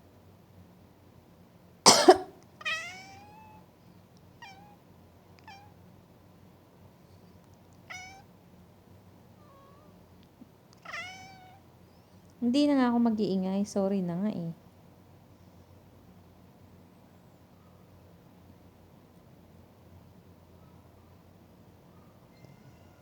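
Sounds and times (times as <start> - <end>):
person coughing: 1.9 - 2.4
cat meowing: 2.6 - 3.6, 4.4 - 4.8, 5.4 - 5.8, 7.8 - 8.3, 9.4 - 10.0, 10.8 - 11.6, 22.3 - 23.0.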